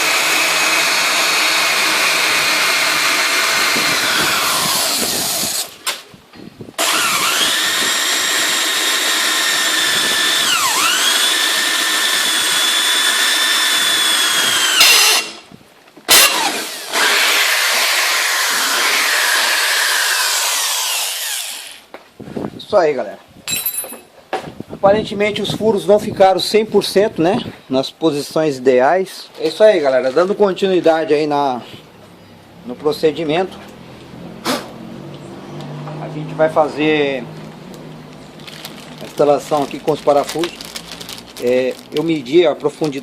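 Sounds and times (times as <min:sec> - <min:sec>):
electric drill whining: 0:00.0 - 0:05.8, 0:06.8 - 0:15.4, 0:16.1 - 0:21.9.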